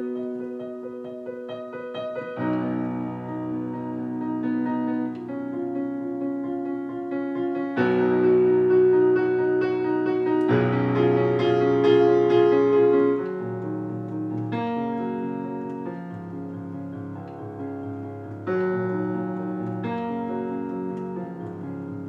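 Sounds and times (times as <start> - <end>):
piano playing repeated notes: 0.0 - 22.0.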